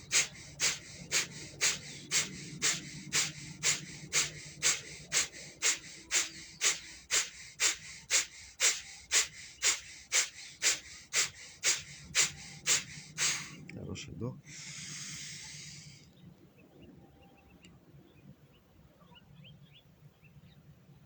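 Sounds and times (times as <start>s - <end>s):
rapid forceful nose breathing: 0.0s - 13.7s, 14.4s - 16.0s.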